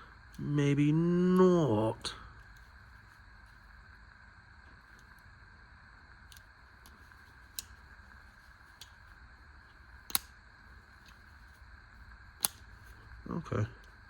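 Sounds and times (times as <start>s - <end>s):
spring-loaded blade clicking: 10.0s - 10.3s, 12.4s - 12.7s.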